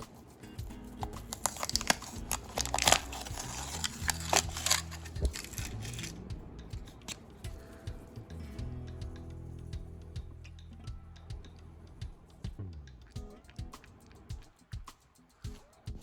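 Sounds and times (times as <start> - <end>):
soft background music: 0.0 - 16.0
crinkling handling noise: 1.0 - 6.2.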